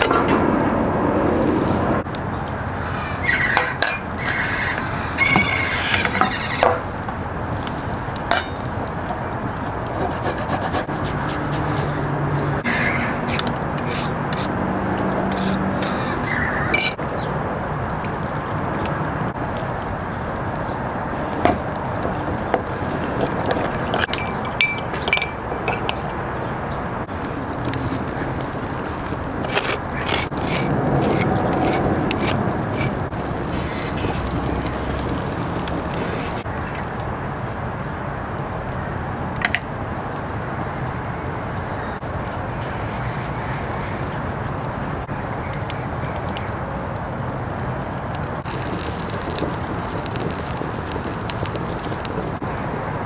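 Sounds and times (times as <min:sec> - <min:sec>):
cooking utensils clinking: 0:02.4 - 0:04.4
scraping on wood: 0:09.6 - 0:16.3, 0:27.1 - 0:36.5, 0:42.0 - 0:45.1
steady hiss: 0:48.4 - 0:52.6.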